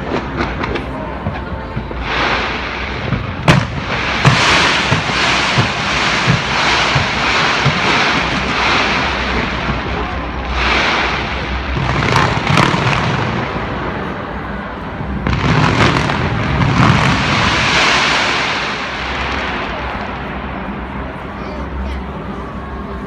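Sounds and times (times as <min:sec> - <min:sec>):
fireworks thuds: 0:00.0 - 0:13.9
fireworks crackle and hiss: 0:00.0 - 0:14.0, 0:15.1 - 0:22.0
fireworks sharp bangs: 0:00.0 - 0:21.3.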